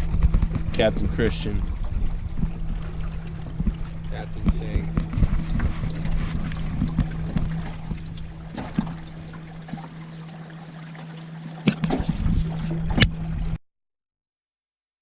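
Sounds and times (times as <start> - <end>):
wind buffeting microphone: 0.0 - 9.5
boat motor humming: 0.0 - 13.6.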